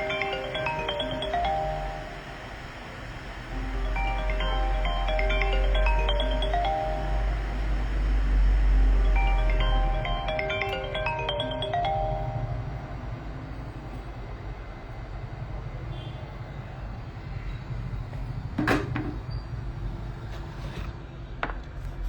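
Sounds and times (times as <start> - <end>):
chiming melody: 0.0 - 13.8
steady low hum: 0.0 - 19.8.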